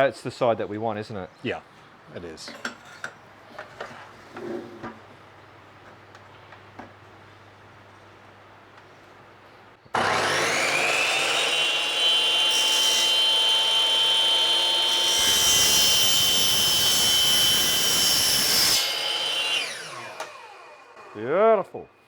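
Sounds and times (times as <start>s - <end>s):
chop saw motor whine: 9.9s - 21.3s
saw blade cutting metal: 10.0s - 20.6s.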